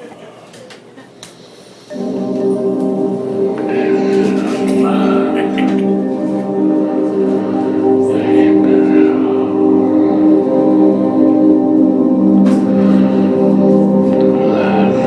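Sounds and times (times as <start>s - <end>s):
drone music with held tones: 1.9s - 15.0s
faint voice: 3.6s - 10.4s.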